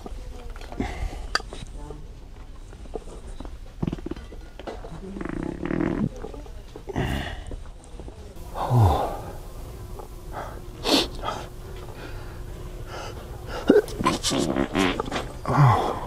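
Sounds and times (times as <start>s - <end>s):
wet fart noises: 3.8s - 4.3s, 5.0s - 6.3s, 13.6s - 15.4s
gasps and breaths: 6.9s - 7.7s, 8.4s - 9.5s, 10.2s - 16.0s.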